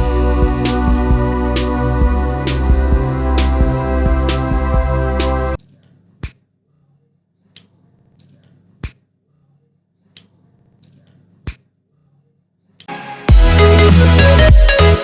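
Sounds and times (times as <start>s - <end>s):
sharp snap-like hits: 6.2s - 6.4s, 8.8s - 9.0s.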